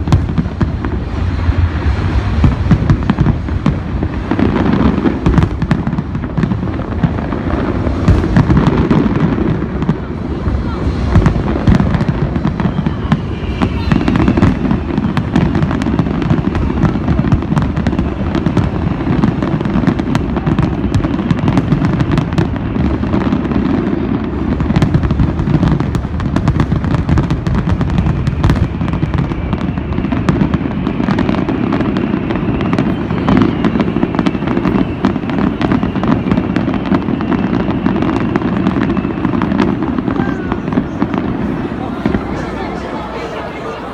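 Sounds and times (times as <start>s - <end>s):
low rumble: 0.0s - 8.8s
fireworks bangs and crackles: 0.0s - 43.9s.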